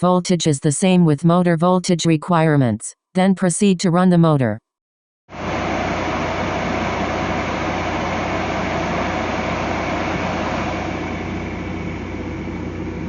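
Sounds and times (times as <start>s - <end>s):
fan motor hum: 5.3s - 13.0s
rush of air from fan: 5.3s - 13.0s.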